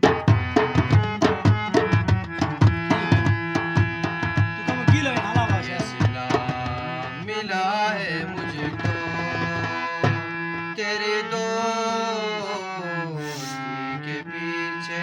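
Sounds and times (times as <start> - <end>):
held chords: 0.0 - 7.2
tabla playing quick rhythm: 0.0 - 10.6.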